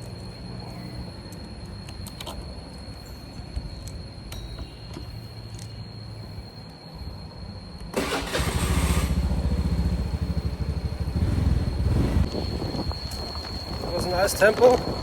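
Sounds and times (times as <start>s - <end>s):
motorbike engine running: 8.0s - 12.7s.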